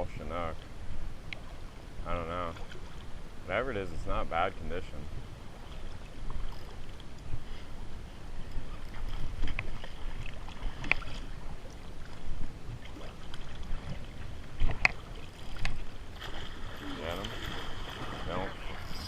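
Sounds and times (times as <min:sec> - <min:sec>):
water sloshing: 0:08.4 - 0:19.0.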